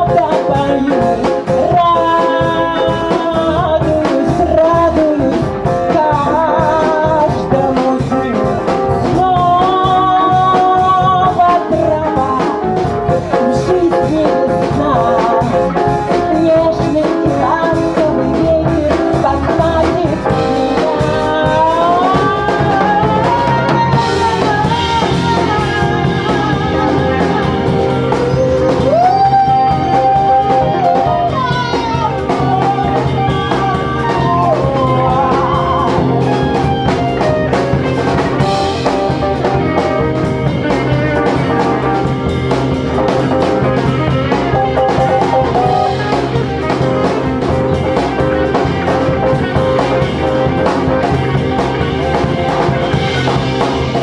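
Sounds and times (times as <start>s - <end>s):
live band with drums and guitar: 0.0s - 54.0s
sliding lead melody: 0.0s - 54.0s.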